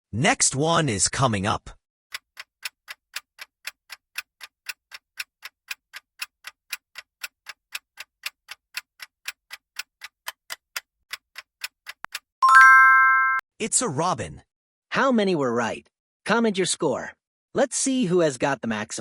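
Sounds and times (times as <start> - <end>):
clock ticking: 2.1 - 12.7.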